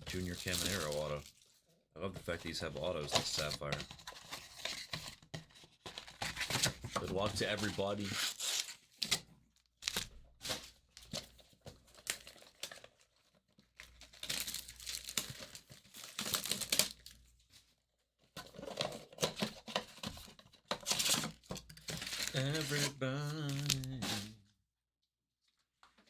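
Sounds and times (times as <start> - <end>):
plastic wrapping tearing and crinkling: 0.0 - 1.4, 7.4 - 9.2, 9.8 - 17.2, 20.8 - 24.4.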